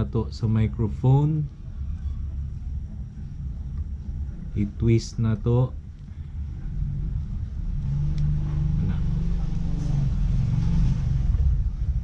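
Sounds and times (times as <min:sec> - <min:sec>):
vehicle engine rumble passing: 0:05.8 - 0:12.0.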